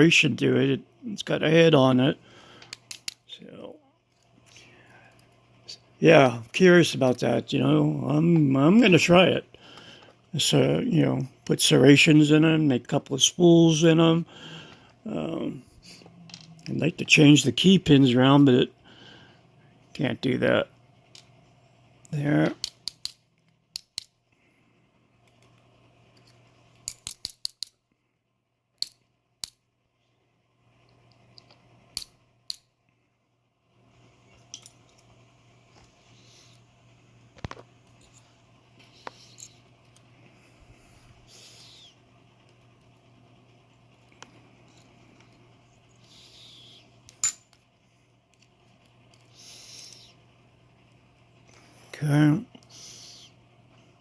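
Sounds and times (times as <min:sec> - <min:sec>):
faint low hum: 0:00.0 - 0:54.0
small sharp metal clicks: 0:22.6 - 0:24.2, 0:26.1 - 0:27.8, 0:28.7 - 0:29.6.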